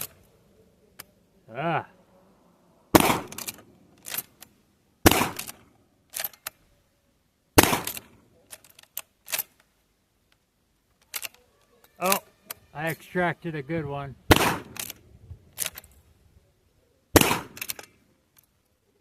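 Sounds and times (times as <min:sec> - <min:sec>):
shotgun shots: 0:02.9 - 0:03.7, 0:05.0 - 0:05.6, 0:07.6 - 0:08.2, 0:14.3 - 0:15.0, 0:17.1 - 0:17.8.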